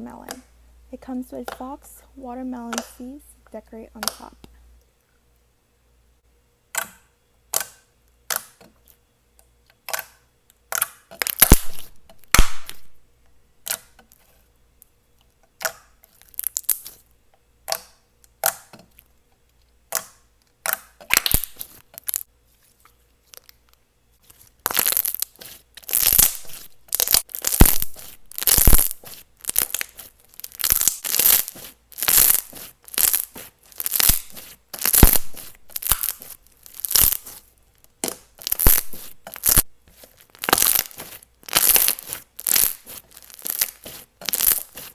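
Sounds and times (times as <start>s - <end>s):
slime sticky pops and crackles: 9.9s - 13.0s, 15.6s - 17.0s, 19.9s - 22.3s, 24.6s - 39.7s, 40.3s - 44.9s.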